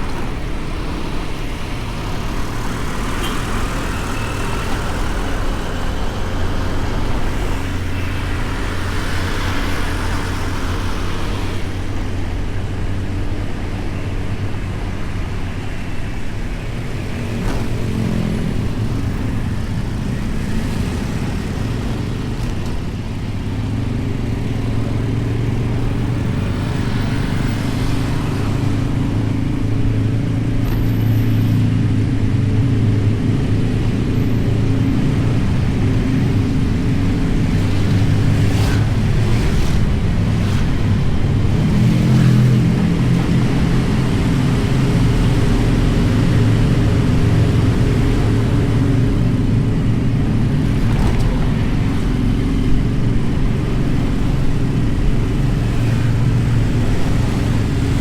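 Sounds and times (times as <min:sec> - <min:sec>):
road and traffic noise: 0:00.0 - 0:58.0.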